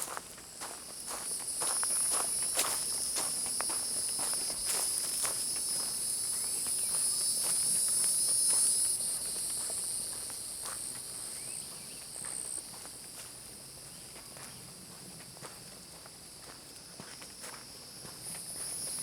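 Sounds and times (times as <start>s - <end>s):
footsteps on woodland trail: 0.0s - 19.0s
insects droning: 0.0s - 19.0s.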